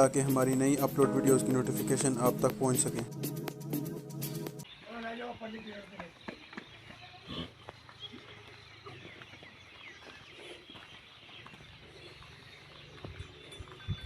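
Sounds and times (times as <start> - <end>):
small birds chirping: 4.6 - 14.0.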